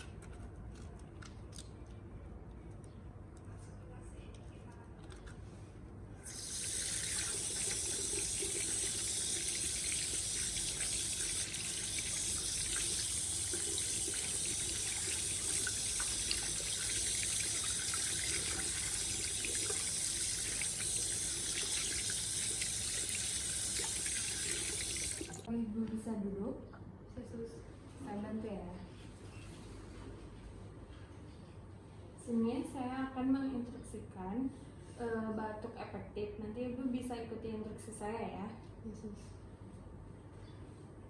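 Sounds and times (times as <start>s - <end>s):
tap water running into sink: 6.2s - 25.5s.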